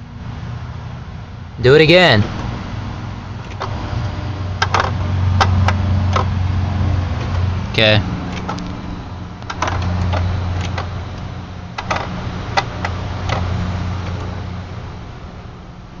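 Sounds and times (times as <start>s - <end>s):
low electrical hum: 0.0s - 16.0s
sharp electrical clicks: 8.1s - 14.9s.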